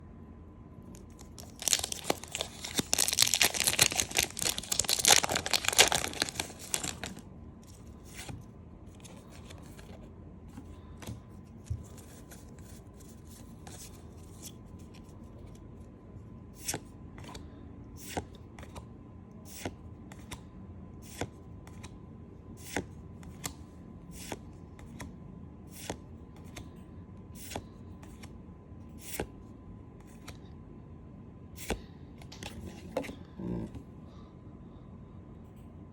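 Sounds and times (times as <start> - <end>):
foil wrapper crinkling: 1.0 - 7.2.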